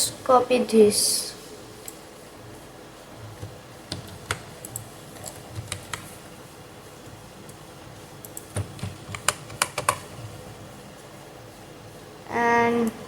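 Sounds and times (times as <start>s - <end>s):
computer keyboard clicking: 3.4s - 6.1s, 8.2s - 10.2s.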